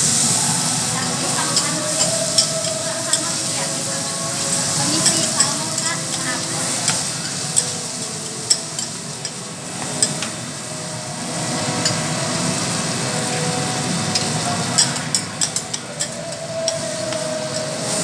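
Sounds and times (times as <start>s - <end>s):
food sizzling on a griddle: 0.0s - 18.0s
metal spatulas tapping hot plate: 1.3s - 3.6s, 4.3s - 10.4s, 11.8s - 12.1s, 14.1s - 18.0s.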